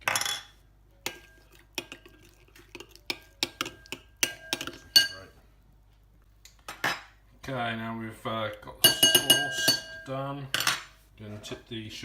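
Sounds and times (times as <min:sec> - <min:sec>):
spoon clinking against bowl: 0:01.0 - 0:05.3, 0:08.8 - 0:10.8.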